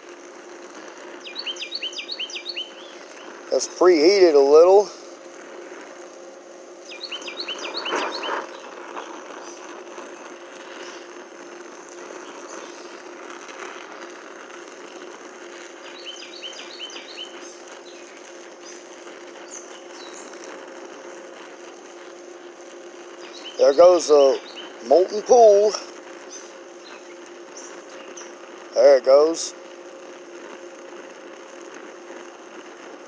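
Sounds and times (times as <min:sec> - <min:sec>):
welding torch flame hissing: 0:00.0 - 0:33.0
bird chirping: 0:01.2 - 0:03.3, 0:06.8 - 0:08.7, 0:15.8 - 0:20.3, 0:23.2 - 0:25.1, 0:26.3 - 0:28.4.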